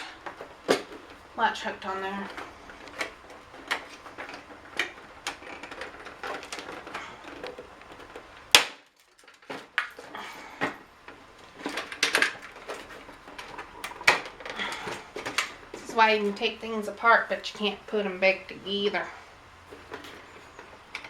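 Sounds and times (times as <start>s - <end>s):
loud sharp plastic snap: 8.5s - 10.0s.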